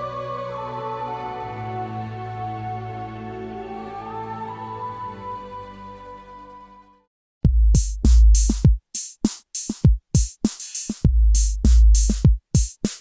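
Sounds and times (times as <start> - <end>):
electronic drum beat: 7.4 - 13.0.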